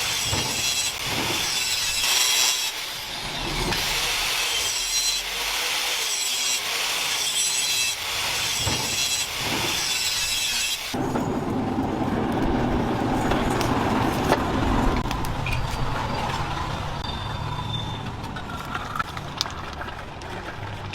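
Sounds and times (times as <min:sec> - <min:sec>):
hand tool rasping: 0:00.0 - 0:11.0.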